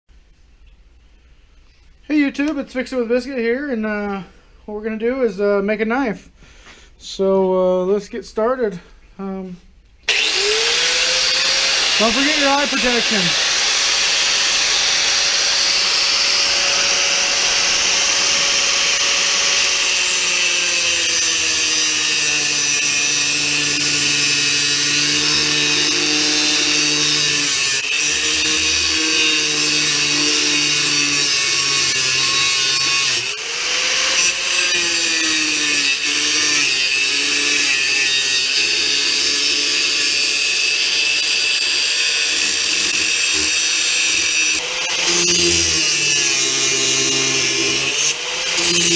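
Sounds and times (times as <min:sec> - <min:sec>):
power tool grinding metal: 0:10.1 - 0:48.9.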